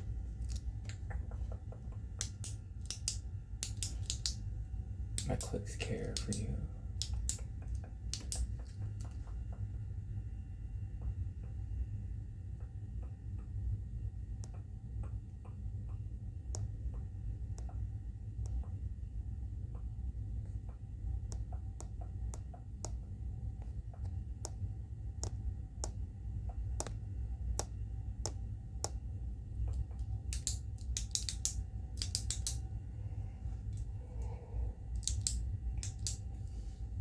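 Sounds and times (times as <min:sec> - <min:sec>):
steady low hum: 0:00.0 - 0:37.0
pen clicking: 0:02.2 - 0:04.4, 0:30.4 - 0:32.6, 0:35.0 - 0:36.2.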